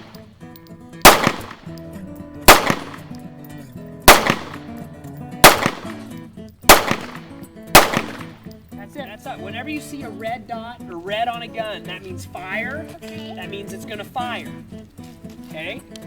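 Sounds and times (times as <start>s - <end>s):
pistol shots: 0.0s - 0.4s, 1.0s - 3.3s, 4.0s - 8.6s.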